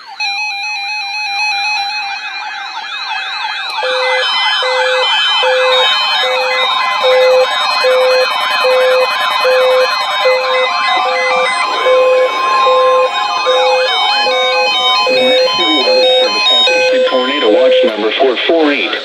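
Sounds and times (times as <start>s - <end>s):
steady high tone: 0.0s - 19.0s
warbling alert alarms: 0.0s - 19.0s
short repeating beep: 3.8s - 18.2s.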